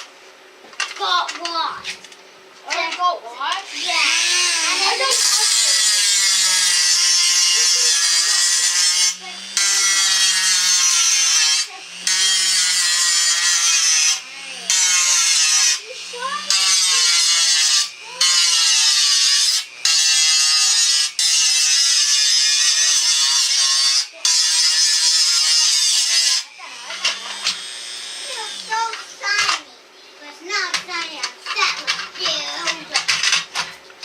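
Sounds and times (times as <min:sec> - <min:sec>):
electric rotary tool whining: 0:03.5 - 0:29.6.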